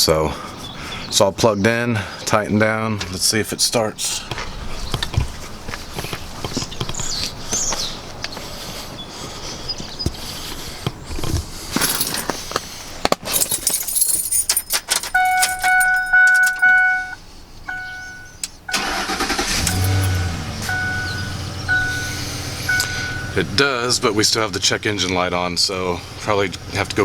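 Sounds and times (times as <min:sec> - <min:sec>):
keys jangling: 0:11.7 - 0:17.2, 0:19.6 - 0:20.2
car dashboard warning chime: 0:15.1 - 0:23.6.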